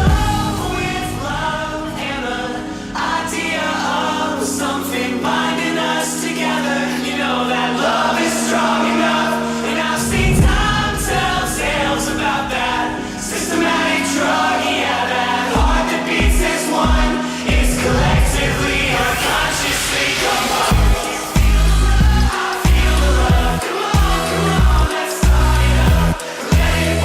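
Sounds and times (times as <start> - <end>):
deep bass hit: 0.0 - 1.3, 10.2 - 12.0, 20.7 - 27.0
choir-like sung vocals: 0.0 - 27.0
electronic dance music: 7.8 - 27.0.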